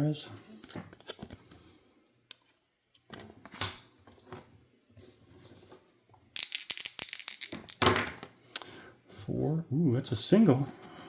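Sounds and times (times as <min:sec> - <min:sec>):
cards handled on tabletop: 0:06.4 - 0:08.0
dice rolling: 0:06.4 - 0:08.2.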